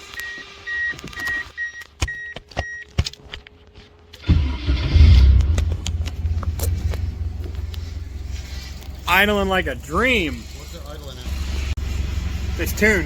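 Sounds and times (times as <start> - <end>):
car engine starting and idling: 4.2 - 13.0.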